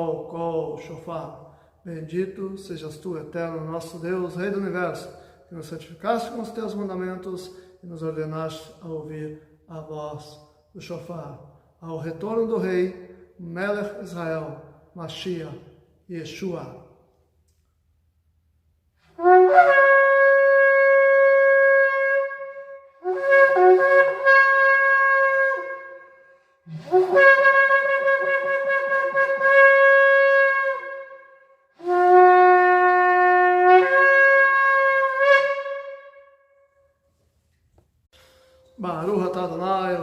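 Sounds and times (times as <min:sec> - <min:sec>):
shofar blasts: 0:19.0 - 0:36.9.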